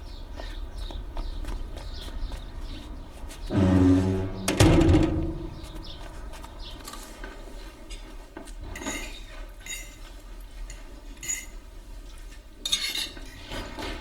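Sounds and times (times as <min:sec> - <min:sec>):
cutlery clinking on plates: 0:12.6 - 0:14.0.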